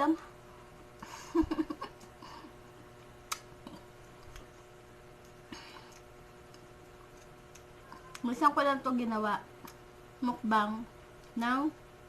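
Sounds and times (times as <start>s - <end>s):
faint room hum: 0.0s - 12.0s
soft eating clicks: 3.2s - 8.6s, 9.6s - 9.9s, 11.1s - 11.4s.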